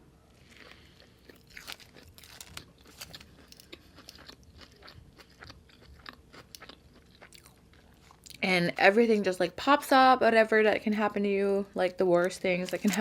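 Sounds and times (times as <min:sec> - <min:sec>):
person chewing food: 0:00.4 - 0:08.4.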